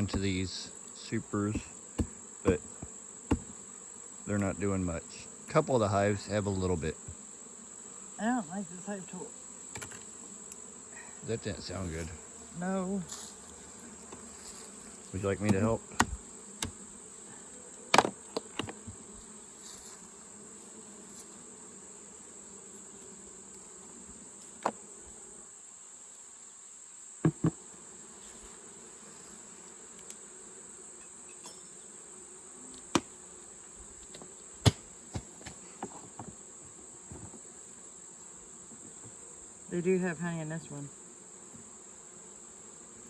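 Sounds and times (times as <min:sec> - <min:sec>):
hive tool knocking on wood: 0:00.0 - 0:00.3, 0:01.5 - 0:03.6, 0:09.7 - 0:10.7, 0:15.3 - 0:16.9, 0:17.9 - 0:19.1, 0:24.6 - 0:24.8, 0:27.2 - 0:27.6, 0:32.8 - 0:33.2, 0:34.0 - 0:36.4
honeybees buzzing: 0:00.0 - 0:43.0.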